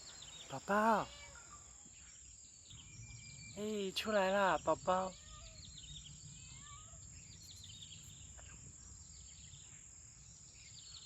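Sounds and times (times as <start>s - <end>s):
bird chirps: 0.0s - 11.0s
high-pitched insect trill: 0.0s - 11.0s.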